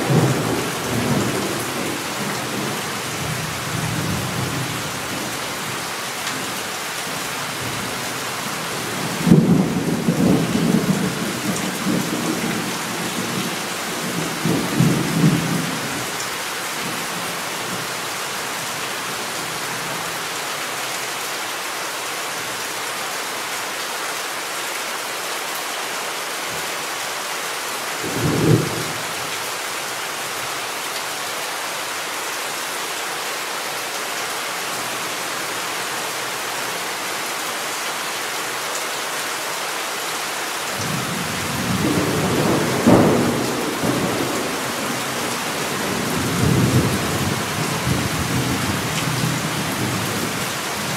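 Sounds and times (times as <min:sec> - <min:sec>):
heavy rain hissing: 0:00.0 - 0:50.9
thunder rumbling: 0:40.9 - 0:47.0.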